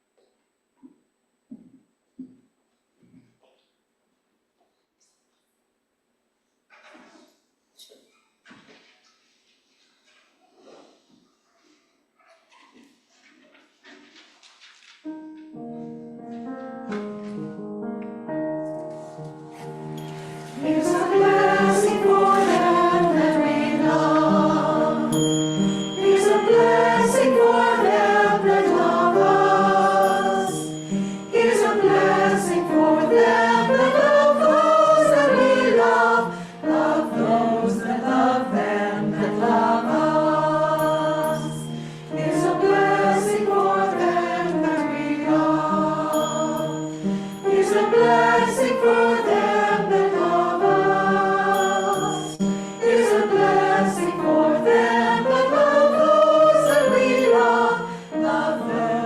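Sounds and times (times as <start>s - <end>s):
group singing in harmony: 20.0s - 59.0s.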